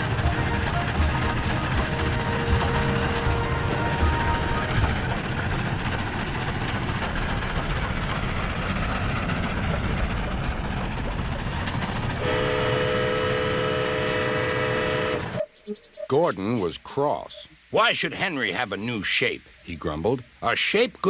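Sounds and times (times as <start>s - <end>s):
steam whistle chord: 0.0s - 5.0s, 12.2s - 15.8s
steam locomotive rumble: 0.0s - 15.4s.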